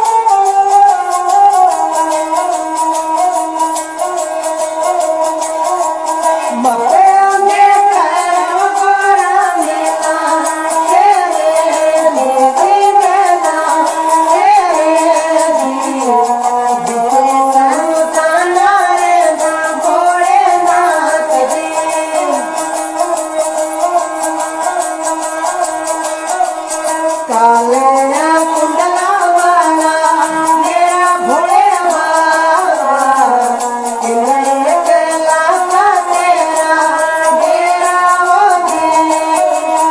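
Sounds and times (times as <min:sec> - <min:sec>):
high voice singing: 0:00.0 - 0:39.9
ticking percussion: 0:00.0 - 0:39.9.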